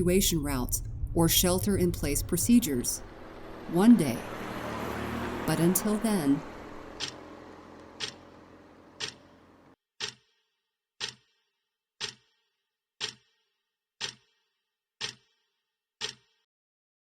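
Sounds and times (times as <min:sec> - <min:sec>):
background sound: 0:00.0 - 0:09.7
clock ticking: 0:03.7 - 0:10.2, 0:11.0 - 0:11.2, 0:12.0 - 0:12.2, 0:13.0 - 0:13.3, 0:14.0 - 0:14.3, 0:15.0 - 0:15.3, 0:16.0 - 0:16.3.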